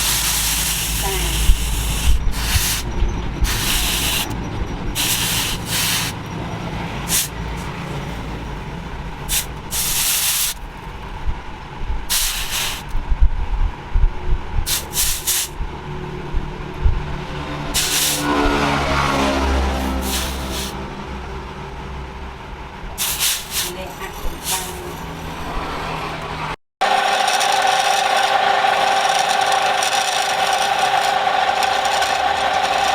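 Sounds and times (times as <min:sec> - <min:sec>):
short bursts of hissing: 0:00.0 - 0:04.3, 0:05.0 - 0:06.2, 0:07.1 - 0:07.3, 0:09.3 - 0:10.6, 0:12.1 - 0:13.0, 0:14.7 - 0:15.6, 0:17.8 - 0:18.3, 0:20.0 - 0:20.8, 0:23.0 - 0:24.9
steady low rumble: 0:00.0 - 0:23.1.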